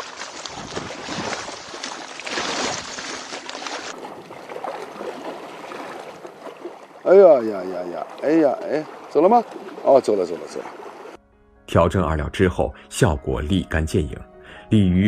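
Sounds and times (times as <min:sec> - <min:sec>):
water splashing at lake edge: 0:00.0 - 0:11.2.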